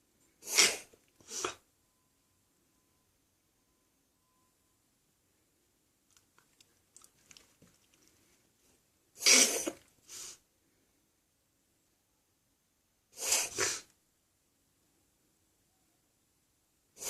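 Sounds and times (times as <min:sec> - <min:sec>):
dog coughing harshly: 0:00.4 - 0:01.6, 0:09.2 - 0:09.8.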